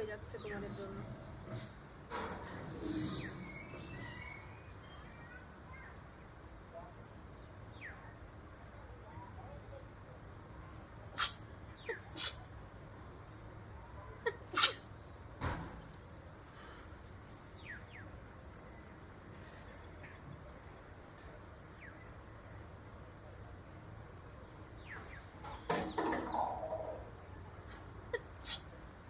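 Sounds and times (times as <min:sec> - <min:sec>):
sniffing: 0:11.2 - 0:11.4, 0:12.0 - 0:12.4, 0:14.4 - 0:14.8, 0:28.2 - 0:28.7
woman blowing her nose: 0:12.2 - 0:12.4, 0:14.5 - 0:14.8, 0:28.4 - 0:28.6.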